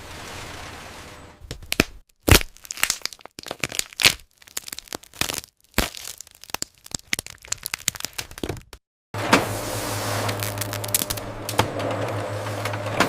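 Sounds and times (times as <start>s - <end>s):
sharp irregular cracks: 1.5s - 8.8s, 10.3s - 11.2s.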